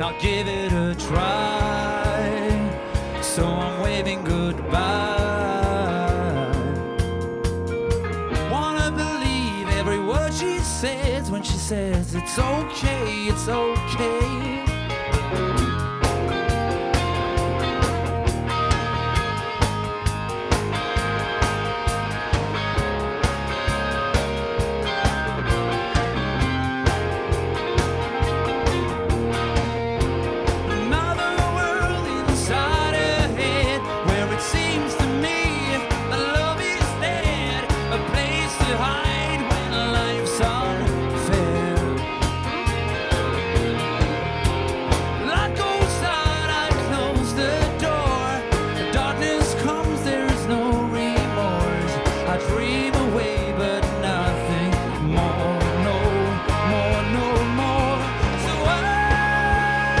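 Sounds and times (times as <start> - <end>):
person singing: 0.0 - 7.1, 8.4 - 15.0, 30.6 - 42.4, 45.2 - 60.0
bass: 0.0 - 60.0
drum kit beat: 0.0 - 60.0
guitar: 0.0 - 60.0
live pop rock band: 0.0 - 60.0
pitch-bending melody line: 0.0 - 60.0.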